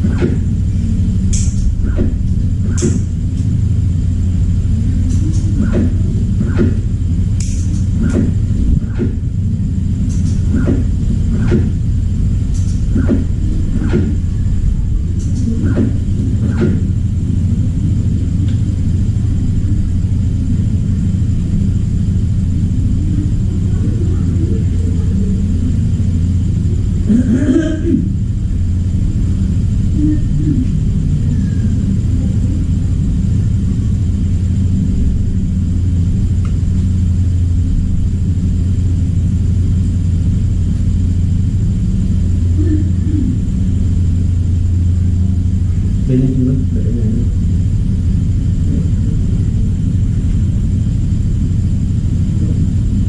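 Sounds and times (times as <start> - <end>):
low electrical hum: 0.0 - 53.0.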